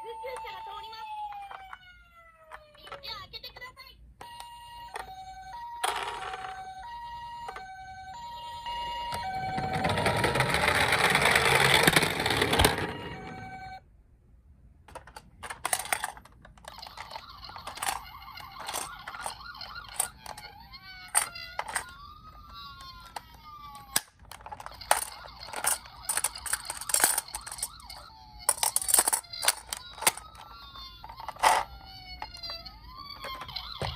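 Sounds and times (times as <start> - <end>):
wailing siren tone: 0.0 - 3.0, 4.2 - 13.8, 17.8 - 20.5, 24.9 - 30.5
toy two-tone siren: 0.0 - 3.1, 4.2 - 13.8, 16.6 - 33.9.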